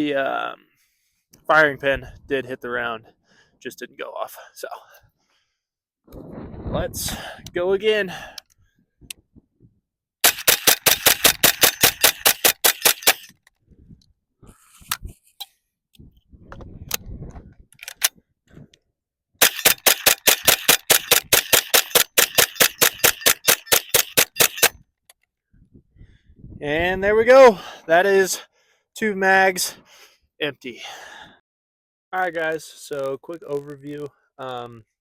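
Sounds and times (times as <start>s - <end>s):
rapid rifle gunshots: 10.2s - 13.3s, 19.4s - 24.8s
magazine rattling and clicking: 10.2s - 13.6s, 17.7s - 18.2s, 19.4s - 25.3s.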